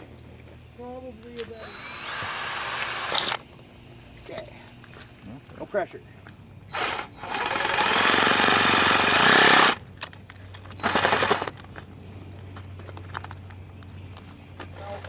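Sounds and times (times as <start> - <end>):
power tool cutting plastic: 1.4 - 3.5, 6.7 - 9.8, 10.8 - 11.6.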